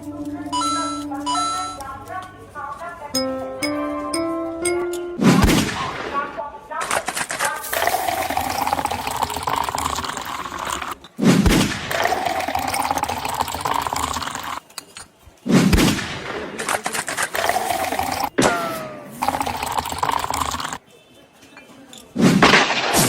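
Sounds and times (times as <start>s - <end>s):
liquid pouring into glass: 7.7s - 11.0s, 11.9s - 14.6s, 17.4s - 18.3s, 19.2s - 20.8s.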